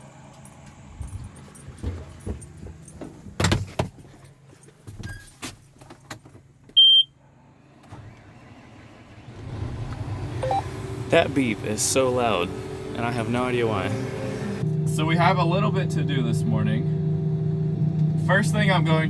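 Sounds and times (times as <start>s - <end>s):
loud high-pitched electronic beep: 10.4s - 10.7s.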